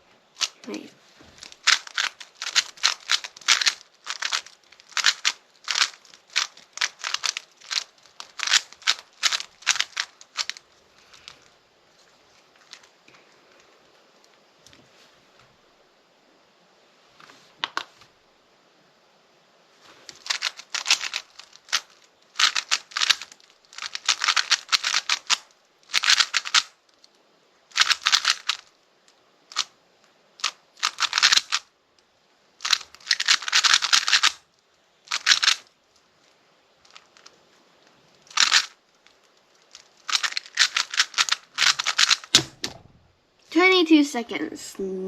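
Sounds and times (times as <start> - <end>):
puzzle cube clicking turns: 0.4 - 0.7, 1.4 - 11.5, 20.1 - 26.8, 27.7 - 29.7, 30.4 - 31.7, 32.6 - 34.4, 35.1 - 35.7, 36.9 - 37.3, 38.2 - 42.8.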